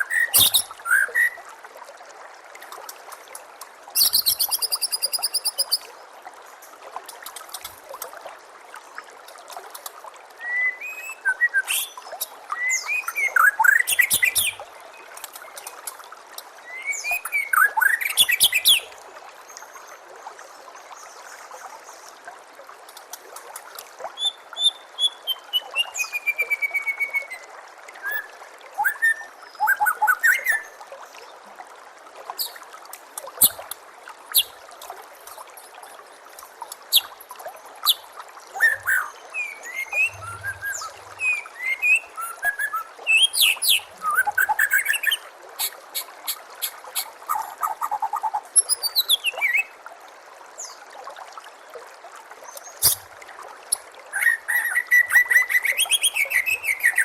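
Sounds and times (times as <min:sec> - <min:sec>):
bird singing whistles and trills: 0:00.0 - 0:01.4, 0:04.0 - 0:05.9, 0:10.4 - 0:14.6, 0:16.7 - 0:18.9, 0:24.2 - 0:30.7, 0:38.6 - 0:45.2, 0:54.2 - 0:57.0
babbling water: 0:00.0 - 0:57.0.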